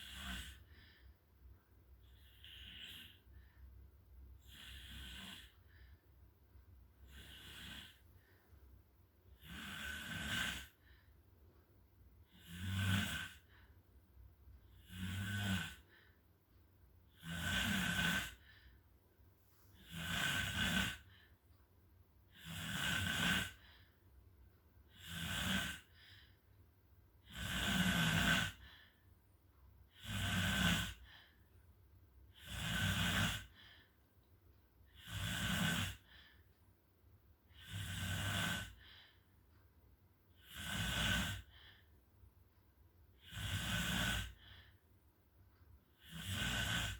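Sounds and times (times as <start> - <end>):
person snoring: 0.0 - 0.9, 2.0 - 3.3, 4.4 - 5.6, 7.0 - 8.0, 9.4 - 10.8, 12.3 - 13.5, 14.7 - 16.0, 17.1 - 18.5, 19.8 - 21.1, 22.3 - 23.8, 24.9 - 26.1, 27.2 - 28.8, 29.9 - 31.4, 32.3 - 33.8, 34.9 - 36.2, 37.5 - 38.9, 40.4 - 41.6, 43.2 - 44.6, 45.9 - 46.9.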